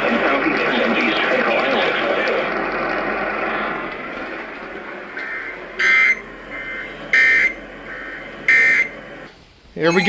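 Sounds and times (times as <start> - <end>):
faint radio hiss: 0.0 - 5.8.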